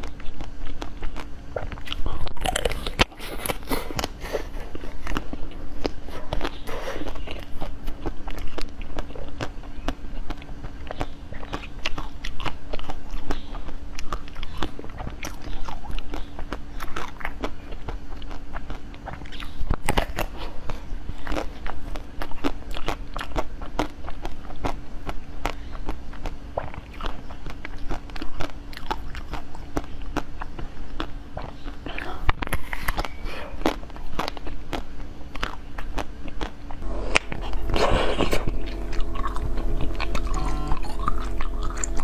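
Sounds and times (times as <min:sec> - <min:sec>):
crunchy chewing: 0:00.0 - 0:42.0
faint hum: 0:00.0 - 0:42.0.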